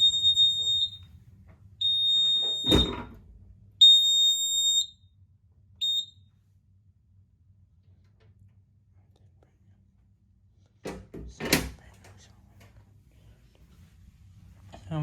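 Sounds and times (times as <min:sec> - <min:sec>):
alarm chirp: 0:00.0 - 0:01.0, 0:01.8 - 0:03.0, 0:03.8 - 0:05.0, 0:05.8 - 0:06.2
high-pitched alarm beeps: 0:00.0 - 0:01.0, 0:01.8 - 0:03.0, 0:03.8 - 0:05.0, 0:05.8 - 0:06.2.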